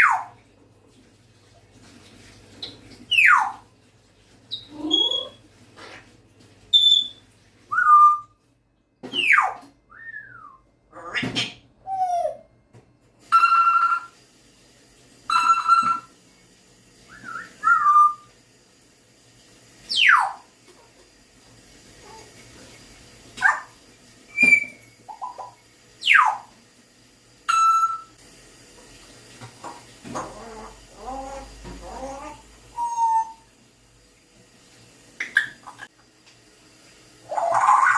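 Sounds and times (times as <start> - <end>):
parrot whistling and mimicking: 0.0 - 0.3, 2.6 - 3.6, 4.5 - 5.4, 6.7 - 8.4, 9.1 - 12.5, 13.2 - 14.2, 15.3 - 16.1, 17.1 - 18.3, 19.9 - 20.5, 24.3 - 26.5, 27.5 - 28.2, 30.2 - 33.5, 37.3 - 37.9.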